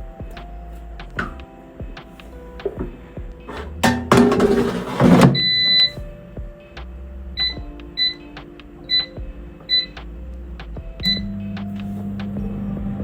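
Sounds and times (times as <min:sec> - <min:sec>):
air fryer drawer scraping clunk: 0:03.5 - 0:05.6
control panel beeps: 0:05.3 - 0:06.0, 0:07.4 - 0:08.2, 0:08.8 - 0:10.0, 0:11.0 - 0:11.5.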